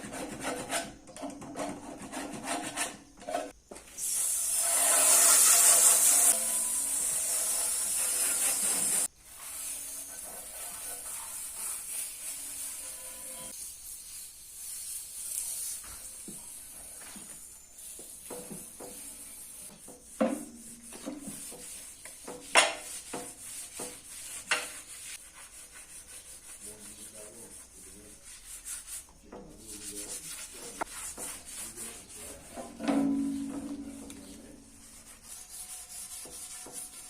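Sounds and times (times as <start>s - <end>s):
raspy sanding: 4.6s - 37.0s
sharp ringing knocks: 32.8s - 34.3s.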